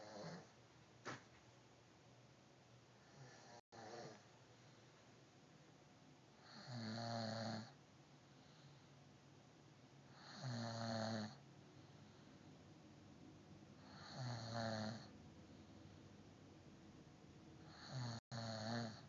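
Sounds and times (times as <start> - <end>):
woman snoring: 0.0 - 0.5, 3.0 - 4.3, 6.4 - 7.8, 10.1 - 11.4, 13.8 - 15.1, 17.6 - 19.0.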